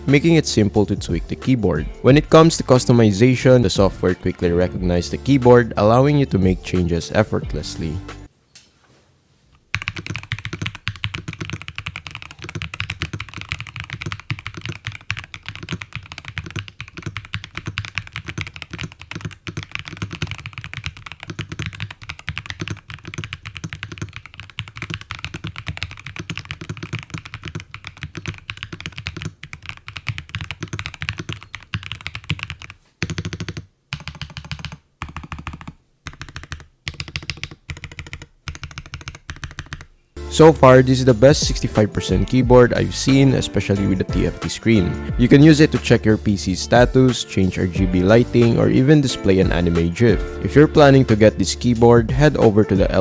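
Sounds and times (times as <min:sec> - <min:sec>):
mechanical keyboard typing: 0:09.7 - 0:39.9.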